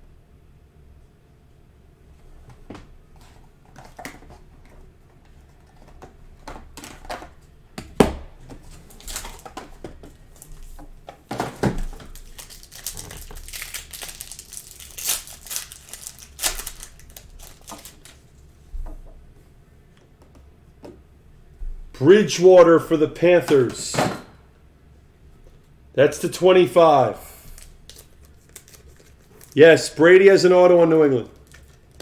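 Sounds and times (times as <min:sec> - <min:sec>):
plastic wrapper crinkling and tearing: 0:09.0 - 0:09.5, 0:11.7 - 0:18.2, 0:27.4 - 0:29.8, 0:31.2 - 0:32.0.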